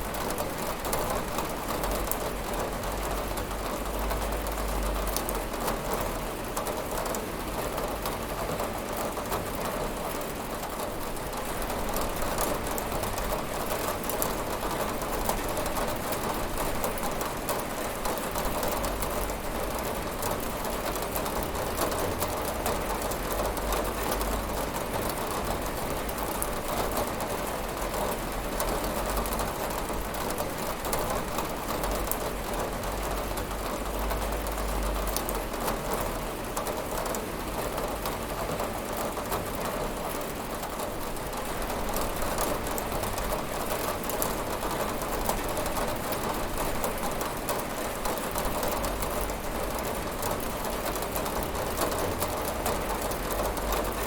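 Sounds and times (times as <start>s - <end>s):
rain pattering on a window: 0.0s - 54.0s.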